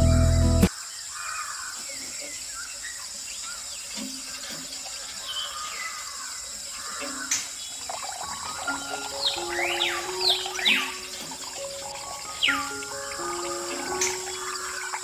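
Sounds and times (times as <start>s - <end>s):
birds chirping: 2.0s - 15.0s
high insect drone: 4.5s - 15.0s.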